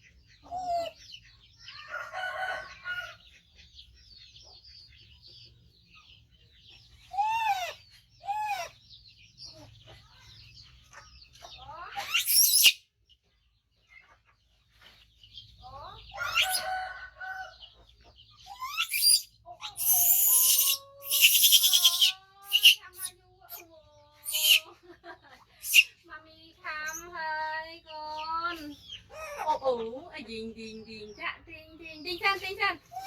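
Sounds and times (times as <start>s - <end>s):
baby monkey screaming: 7.1s - 8.8s, 11.8s - 12.8s, 16.2s - 16.7s, 18.5s - 24.7s, 25.6s - 26.0s.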